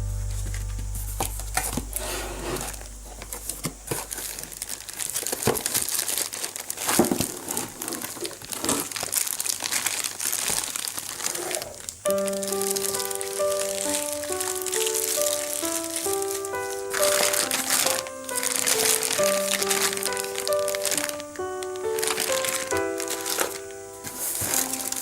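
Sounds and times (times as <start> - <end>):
held low music note: 0.0 - 3.5
packaging crinkling: 0.3 - 25.0.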